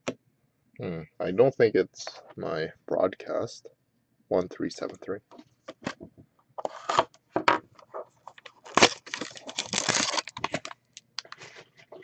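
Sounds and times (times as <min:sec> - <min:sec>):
packaging crinkling and rustling: 0:07.8 - 0:12.0.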